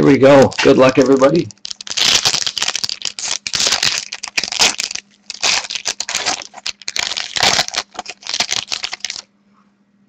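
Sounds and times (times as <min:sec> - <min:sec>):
wrapper crinkling and tearing: 0:00.4 - 0:09.3.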